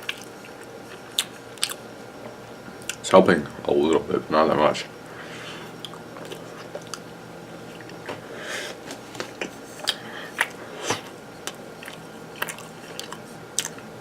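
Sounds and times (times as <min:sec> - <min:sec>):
faint steady hum: 0:00.0 - 0:14.0
breathy sniff: 0:05.1 - 0:05.8, 0:08.2 - 0:08.8, 0:10.0 - 0:11.1
person breathing: 0:05.1 - 0:05.8, 0:08.2 - 0:08.8, 0:09.9 - 0:11.1.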